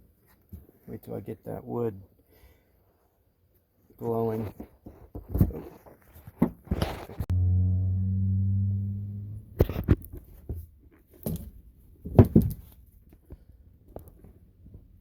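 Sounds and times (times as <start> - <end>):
man humming: 7.3 - 9.6.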